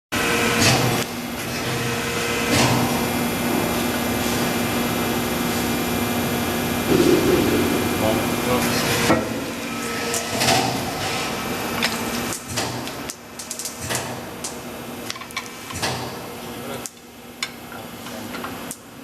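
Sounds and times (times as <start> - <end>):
steady low hum: 3.1 - 11.8.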